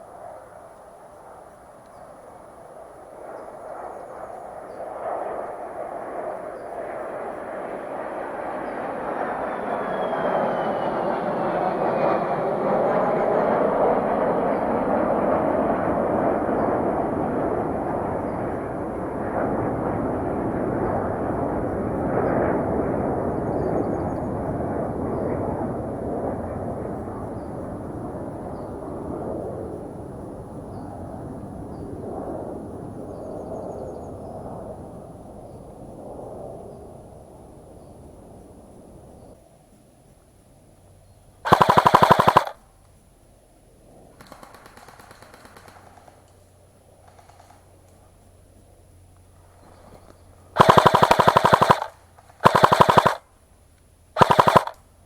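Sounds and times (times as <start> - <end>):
airsoft gun firing bursts: 41.5 - 42.6, 44.2 - 46.2, 50.6 - 53.2, 54.2 - 54.8.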